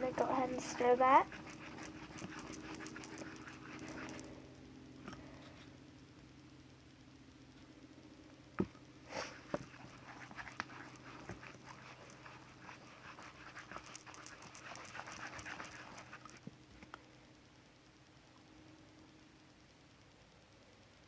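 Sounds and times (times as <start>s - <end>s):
slime squelching: 0.0s - 4.4s, 8.6s - 16.4s.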